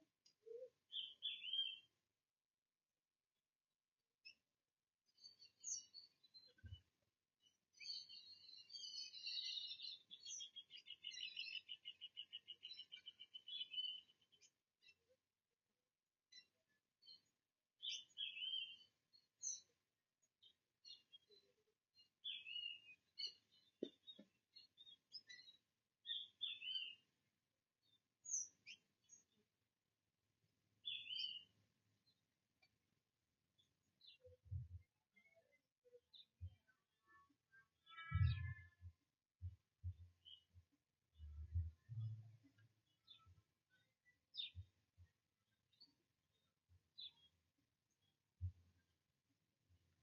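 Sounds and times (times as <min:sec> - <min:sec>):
birds chirping: 0:00.2 - 0:01.9, 0:05.1 - 0:15.1, 0:16.3 - 0:27.2, 0:27.8 - 0:29.4, 0:30.8 - 0:32.8, 0:33.5 - 0:38.9, 0:41.2 - 0:44.8.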